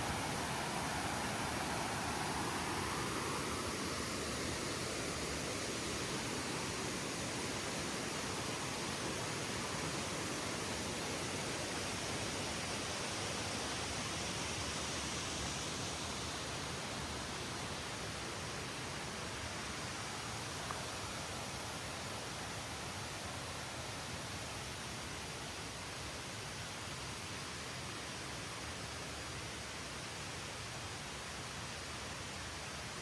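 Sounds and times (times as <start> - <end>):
water rushing: 0.0 - 33.0.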